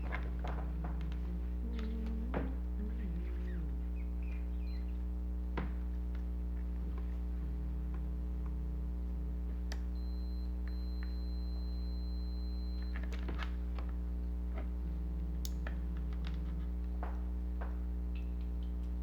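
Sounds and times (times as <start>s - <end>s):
low electrical hum: 0.0s - 19.0s
continuity tester beeping: 9.9s - 13.2s.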